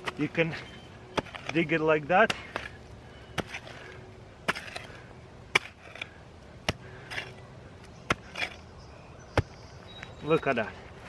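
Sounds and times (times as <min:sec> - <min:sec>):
shovel striking hard ground: 0:00.0 - 0:07.4, 0:08.0 - 0:08.7
gritty scrape of dirt: 0:00.0 - 0:11.0.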